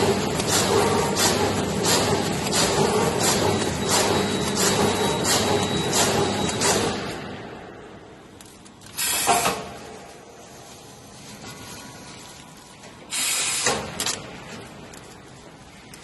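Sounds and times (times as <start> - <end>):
compressed air hiss: 13.1 - 13.8.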